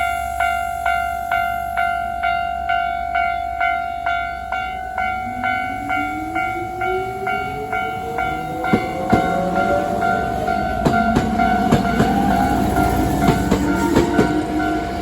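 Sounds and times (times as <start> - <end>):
level-crossing warning bell: 0.0 - 15.0
train motor whine: 5.3 - 15.0
train wheel clacks: 7.9 - 15.0.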